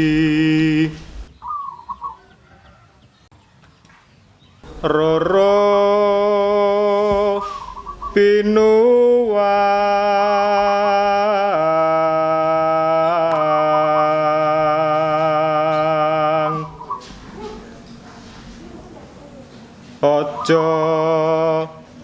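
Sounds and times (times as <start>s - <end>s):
person singing long held notes: 0.0s - 1.3s, 4.7s - 16.8s.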